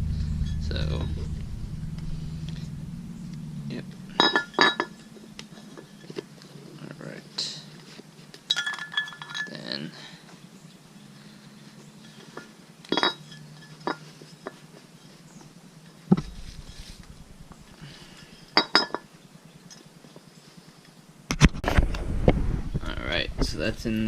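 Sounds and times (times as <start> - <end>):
faint low hum: 0.0 - 24.0
metal parts and tools clinking: 4.2 - 6.4, 8.4 - 10.0, 12.0 - 16.0, 18.4 - 19.1.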